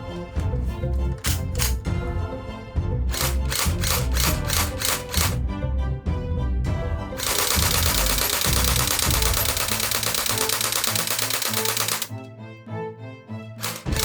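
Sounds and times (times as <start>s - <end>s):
background music: 0.0s - 14.0s
toy gun rapid firing: 1.2s - 1.8s, 3.1s - 5.4s, 7.2s - 12.1s, 13.6s - 14.0s.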